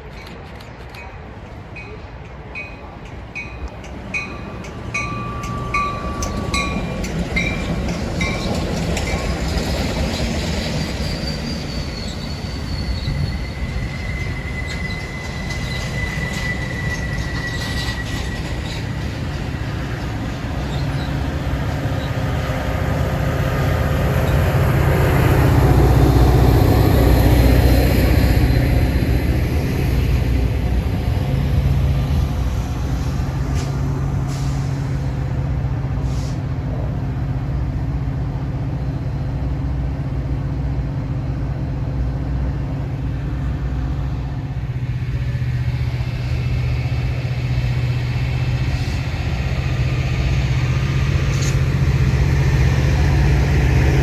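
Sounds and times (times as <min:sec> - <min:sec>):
train rumbling on rails: 0:00.0 - 0:54.0
bell dinging: 0:03.4 - 0:07.6
high wheel squeal: 0:04.2 - 0:22.2.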